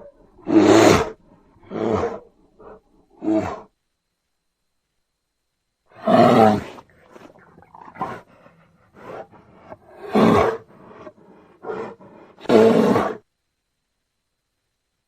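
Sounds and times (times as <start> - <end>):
bear roaring: 0.0 - 3.7, 5.9 - 13.2.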